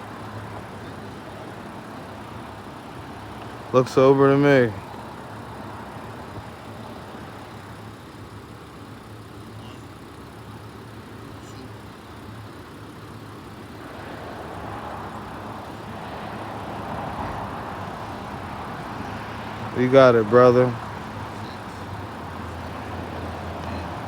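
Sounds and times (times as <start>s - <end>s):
vehicle passing: 0.0s - 7.8s, 13.4s - 24.0s
car engine idling: 0.0s - 24.0s.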